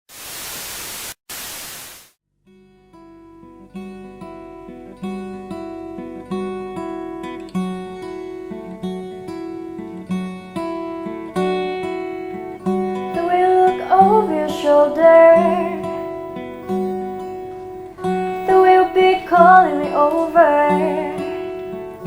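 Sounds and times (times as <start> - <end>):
acoustic guitar plucked chords: 2.5 - 22.0
person singing: 13.0 - 16.0, 18.4 - 22.0.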